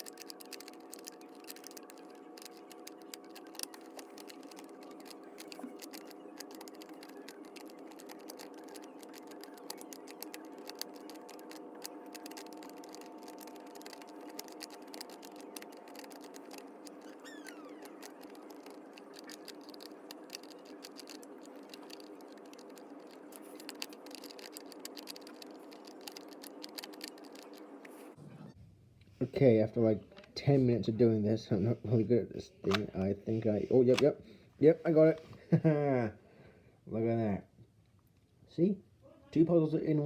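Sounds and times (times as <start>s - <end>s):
plastic pieces clicking and tapping: 0.0s - 27.6s
steady background hum: 0.0s - 40.0s.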